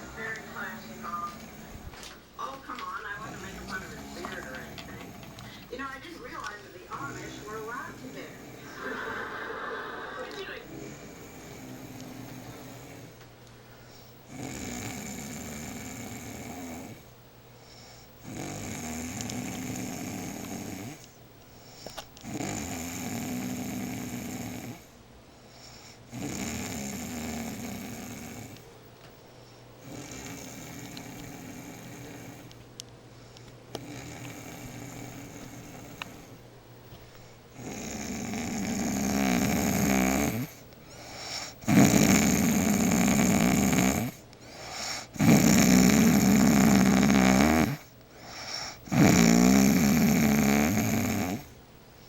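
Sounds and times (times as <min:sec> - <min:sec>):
woman snoring loudly: 0:00.0 - 0:05.7, 0:06.9 - 0:13.1, 0:14.3 - 0:17.0, 0:18.2 - 0:21.0, 0:22.3 - 0:24.8, 0:26.1 - 0:28.6, 0:29.8 - 0:32.5, 0:33.8 - 0:36.3, 0:37.6 - 0:51.6.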